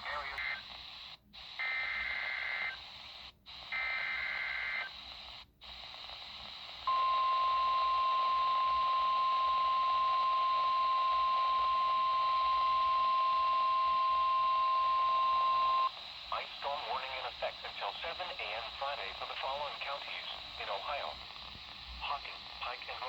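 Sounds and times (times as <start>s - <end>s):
steady alarm tone: 6.9s - 15.9s.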